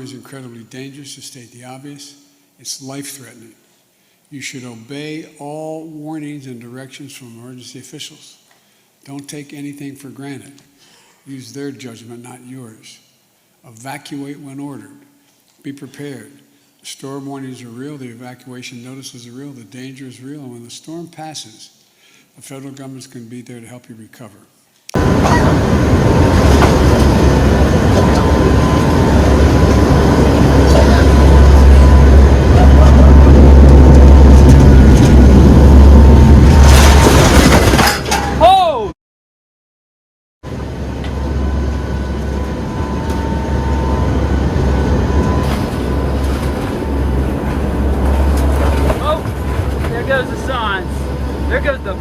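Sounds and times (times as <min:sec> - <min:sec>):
strong wind blowing: 0:25.0 - 0:36.6
strong wind roaring: 0:25.0 - 0:37.4, 0:40.5 - 0:52.0.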